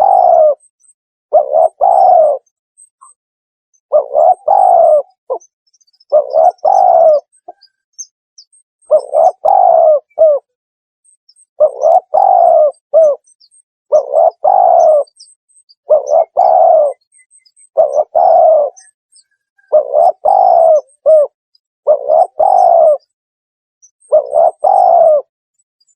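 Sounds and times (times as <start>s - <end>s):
dove cooing: 0.0s - 0.6s, 1.3s - 2.5s, 3.9s - 5.5s, 6.1s - 7.6s, 8.9s - 10.6s, 11.6s - 13.3s, 13.9s - 15.2s, 15.8s - 17.0s, 17.8s - 18.9s, 19.6s - 23.1s, 24.1s - 25.3s.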